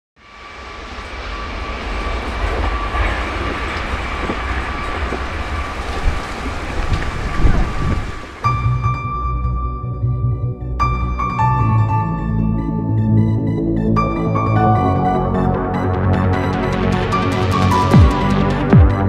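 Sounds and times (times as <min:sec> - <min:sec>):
train wheels rumbling and clacking: 0:00.3 - 0:08.4
music: 0:08.4 - 0:19.0.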